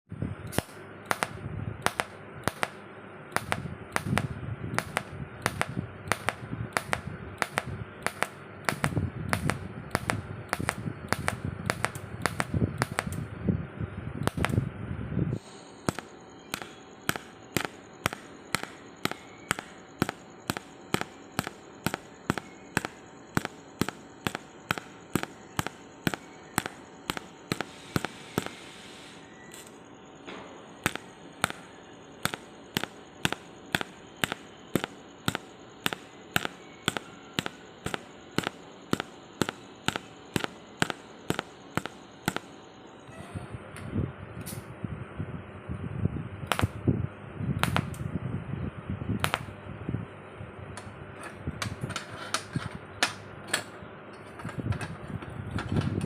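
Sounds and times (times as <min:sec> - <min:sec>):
low background rumble: 0:00.1 - 0:28.5
sharp ticks: 0:00.5 - 0:02.8, 0:03.4 - 0:13.2, 0:15.9 - 0:28.6, 0:32.2 - 0:42.5.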